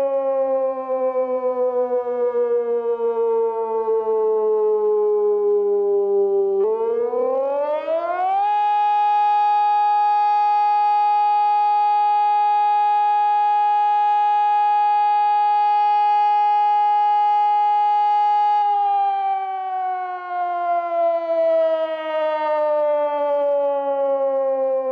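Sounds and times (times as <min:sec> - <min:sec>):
electronic siren: 0:00.0 - 0:24.9.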